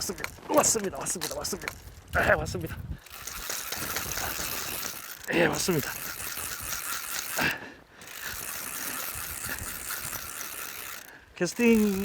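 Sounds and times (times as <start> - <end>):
fishing reel clicking whir: 0.0 - 12.0
wind noise on microphone: 1.6 - 5.2, 8.2 - 10.7.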